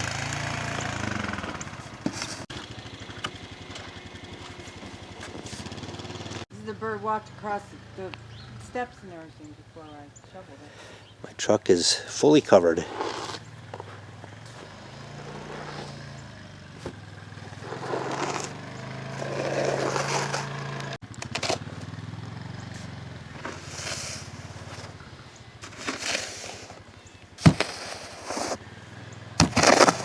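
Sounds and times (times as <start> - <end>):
engine humming: 0.0 - 30.0
snow shovel scraping snow: 1.8 - 2.5, 12.8 - 14.0, 14.6 - 16.1, 17.6 - 20.6, 23.3 - 25.0, 25.6 - 26.8, 27.4 - 28.6, 29.4 - 30.0.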